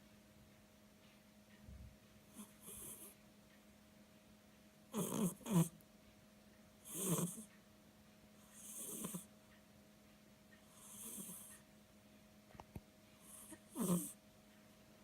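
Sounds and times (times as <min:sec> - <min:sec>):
cat breathing and snoring: 0:02.3 - 0:03.2, 0:04.9 - 0:05.7, 0:06.8 - 0:07.5, 0:08.4 - 0:09.3, 0:10.6 - 0:11.6, 0:13.2 - 0:14.2
faint ticks: 0:08.5 - 0:11.7.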